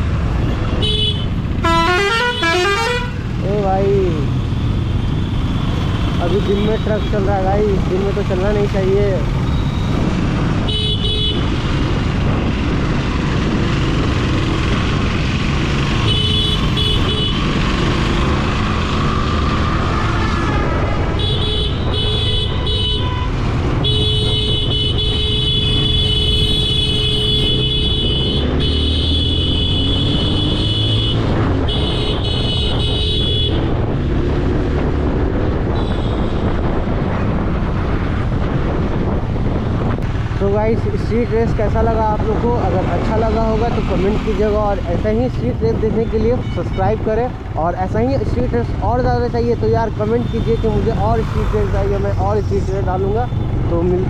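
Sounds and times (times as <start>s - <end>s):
motorcycle engine: 0.0s - 8.2s, 9.1s - 40.4s
vehicle horns honking: 0.7s - 3.3s, 10.6s - 11.6s, 16.0s - 17.5s, 20.1s - 33.7s, 35.7s - 36.5s
wind rumble: 3.1s - 28.6s, 29.8s - 53.9s.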